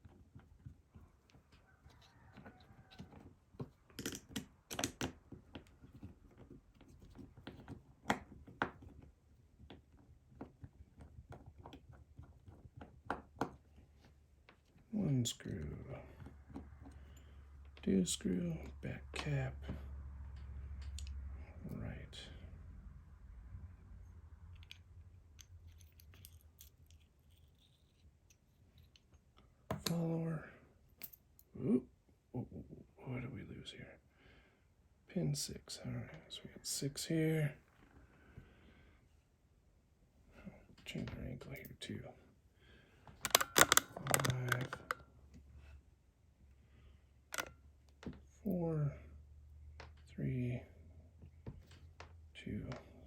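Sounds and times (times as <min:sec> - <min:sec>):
small metal clicks: 0:24.5 - 0:30.0, 0:43.2 - 0:45.1, 0:47.3 - 0:47.6
screwdriver clicking on metal: 0:43.3 - 0:45.0, 0:47.4 - 0:47.6.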